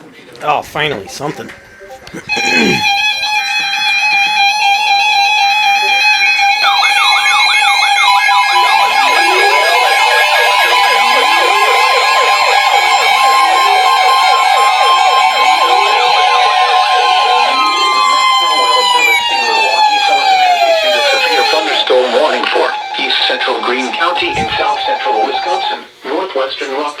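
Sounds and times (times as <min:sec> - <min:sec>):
steady electronic alert tones: 0:00.6 - 0:20.2, 0:24.1 - 0:25.0
warbling siren-style alarms: 0:01.0 - 0:25.8.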